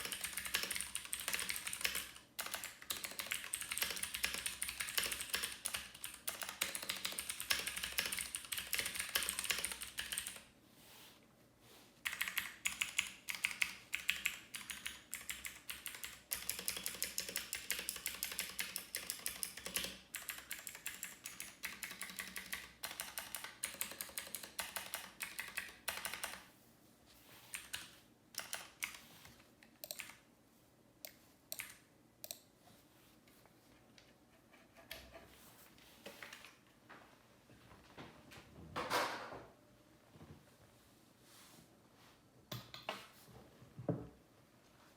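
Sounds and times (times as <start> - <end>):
mechanical keyboard typing: 0.0 - 10.5, 12.0 - 26.5, 27.5 - 29.1, 29.7 - 30.2, 31.5 - 32.4.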